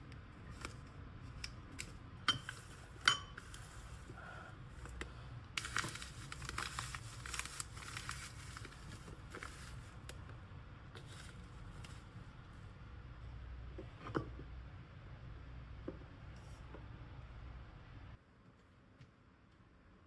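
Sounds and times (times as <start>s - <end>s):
packaging crinkling: 5.6s - 10.3s.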